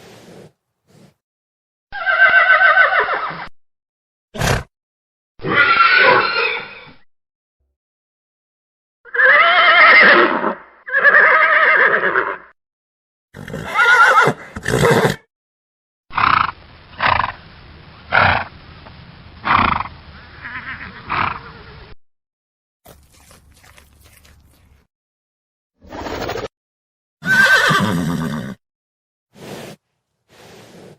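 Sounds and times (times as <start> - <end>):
horse whinnying: 2.0 - 3.5, 5.4 - 7.0, 9.1 - 12.4, 13.4 - 15.2, 27.2 - 28.6.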